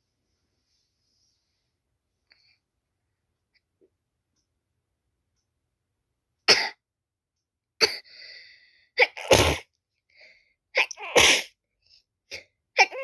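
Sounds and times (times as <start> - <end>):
person sneezing: 9.0 - 9.7, 10.8 - 11.5.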